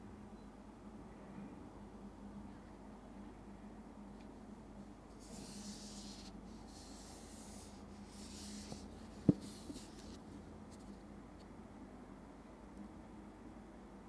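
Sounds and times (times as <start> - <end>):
packaging rubbing and sliding: 5.2 - 11.0.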